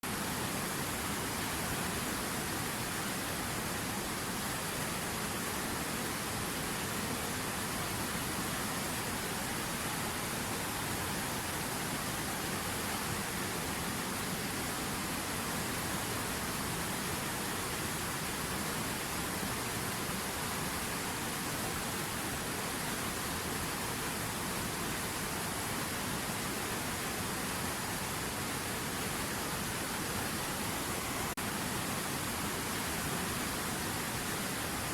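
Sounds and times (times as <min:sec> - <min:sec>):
river water rushing: 0:00.0 - 0:34.9.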